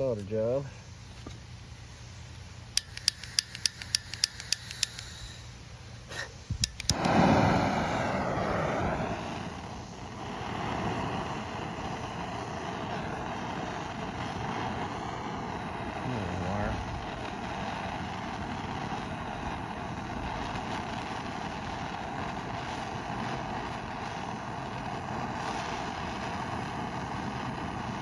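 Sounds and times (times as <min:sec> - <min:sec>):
gas torch flame hissing: 0:00.0 - 0:28.0
gas torch igniter clicking: 0:02.7 - 0:05.5, 0:06.2 - 0:12.3.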